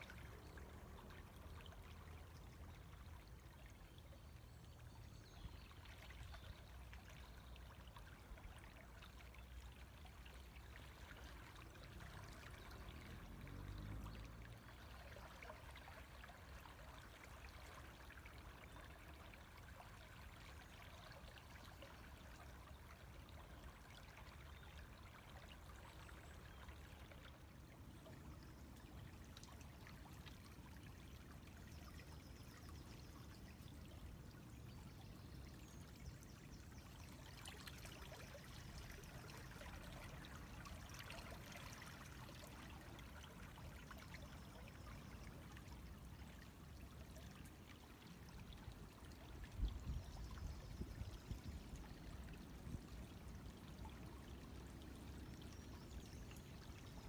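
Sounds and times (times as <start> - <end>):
river flowing: 9.8 - 20.6, 36.6 - 49.5.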